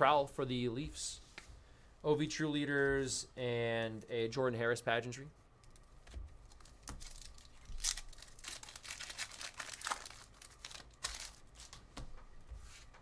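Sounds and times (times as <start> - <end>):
wrappers tearing and crinkling: 6.4 - 12.0.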